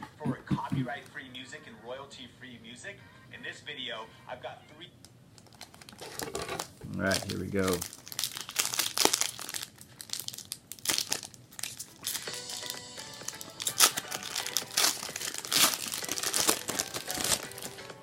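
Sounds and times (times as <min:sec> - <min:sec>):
faint background music: 0:00.0 - 0:18.0
wrapper tearing and crinkling: 0:05.4 - 0:17.8.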